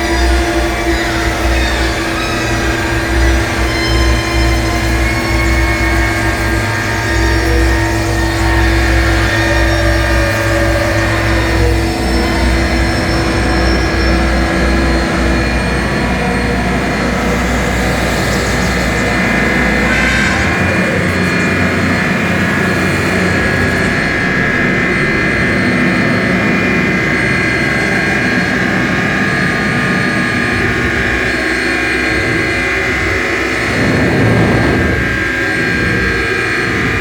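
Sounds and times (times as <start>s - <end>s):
electronic noise drone: 0.0s - 37.0s
deep low rumble: 32.8s - 37.0s.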